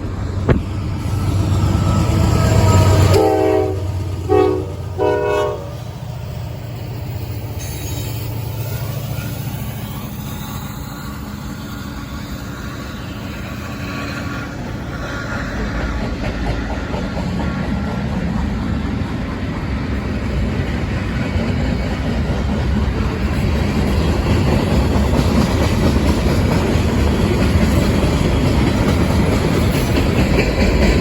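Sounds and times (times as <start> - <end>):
train rumbling past: 0.0 - 31.0
locomotive air horn: 1.8 - 5.8.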